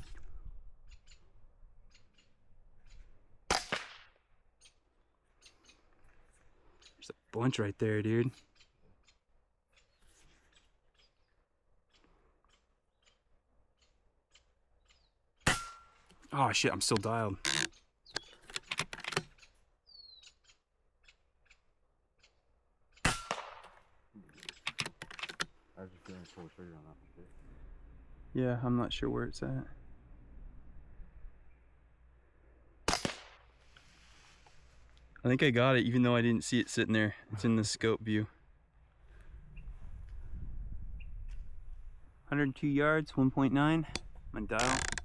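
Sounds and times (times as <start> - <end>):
suppressed rifle shot: 3.5 - 4.2, 23.0 - 23.8, 32.8 - 33.5.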